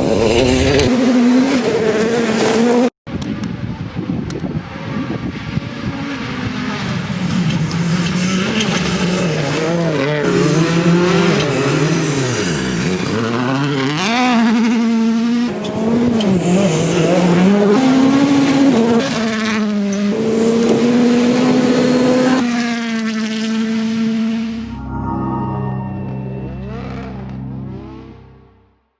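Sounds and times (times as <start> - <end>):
rally car engine revving: 0.0 - 2.8.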